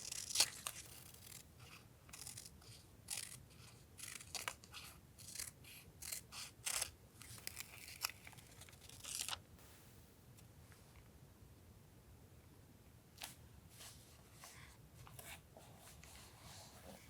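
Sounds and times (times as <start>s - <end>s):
scissors cutting paper: 0.0s - 9.4s.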